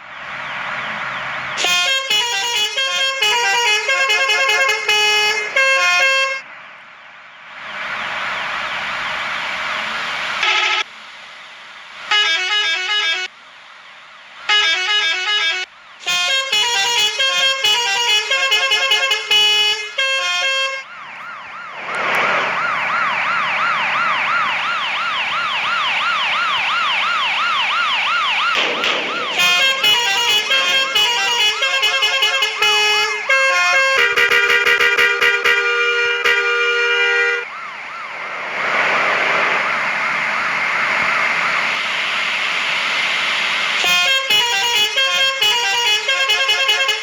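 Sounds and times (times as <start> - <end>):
warbling siren-like wail: 0.0 - 10.9, 11.8 - 45.9
bus horn blast: 1.6 - 6.4, 12.1 - 13.3, 14.5 - 20.8, 29.4 - 37.4, 43.8 - 47.0
musical horn tunes: 1.6 - 6.4, 14.5 - 20.8, 29.4 - 37.4, 43.8 - 47.0.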